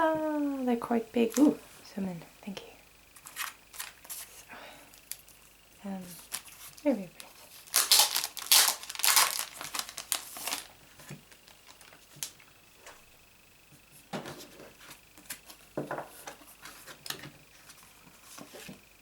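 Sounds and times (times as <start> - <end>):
card stock rustling and crinkling: 3.2 - 4.4, 6.0 - 13.0, 14.2 - 18.8.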